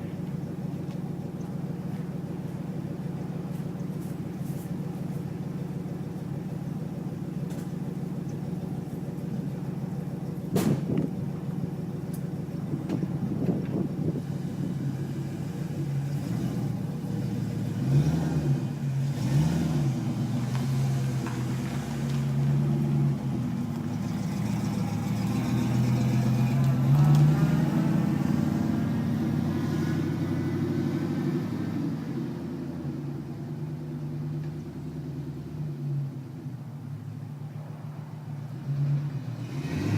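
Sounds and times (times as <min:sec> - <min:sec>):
car engine idling and revving: 0:00.0 - 0:39.9.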